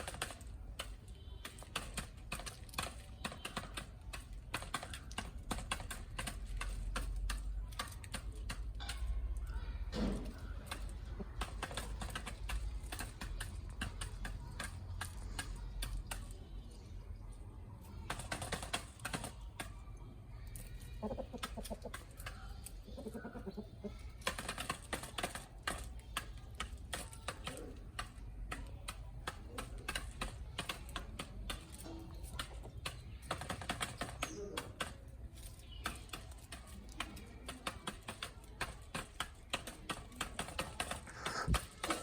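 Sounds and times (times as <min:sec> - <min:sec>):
chickens pecking beak taps: 0:00.0 - 0:42.0
chickens clucking: 0:10.0 - 0:16.3, 0:20.6 - 0:42.0.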